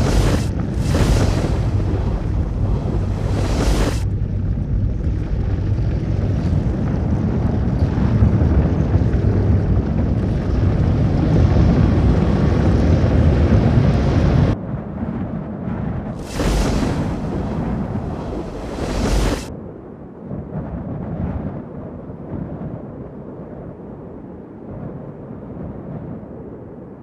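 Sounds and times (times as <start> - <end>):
sudden loud burst of noise: 0.0 - 4.8
deep rumble of wind: 0.0 - 27.0.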